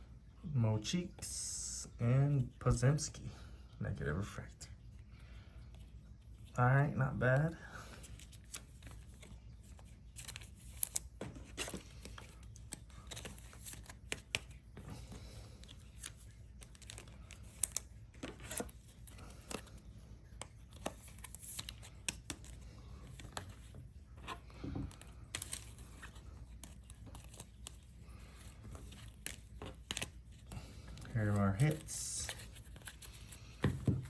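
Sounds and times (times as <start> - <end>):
cards clicking: 8.0 - 33.8.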